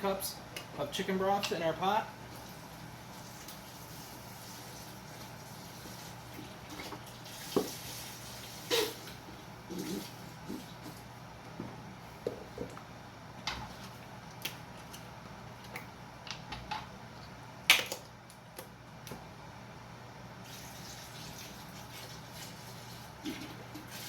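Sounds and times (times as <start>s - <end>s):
liquid pouring and dripping: 20.4s - 24.0s.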